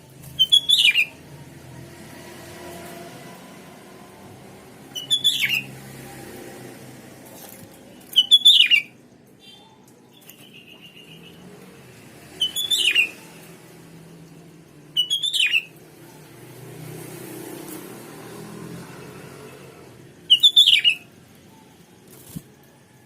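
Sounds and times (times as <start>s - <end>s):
bird chirping calls: 0.3s - 1.5s, 4.8s - 5.8s, 7.8s - 11.6s, 12.2s - 16.4s, 20.2s - 22.6s.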